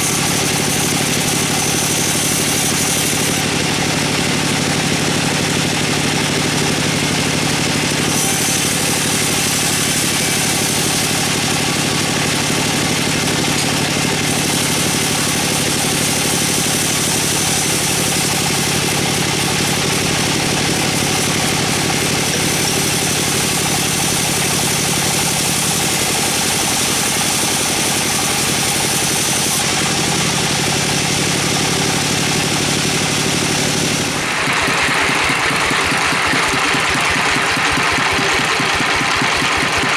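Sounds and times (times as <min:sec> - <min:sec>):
engine running steadily: 0:00.0 - 0:39.9.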